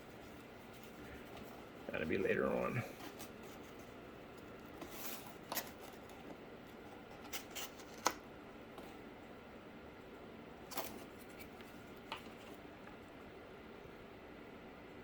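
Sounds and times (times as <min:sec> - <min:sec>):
cardboard rustling: 0:02.9 - 0:08.2.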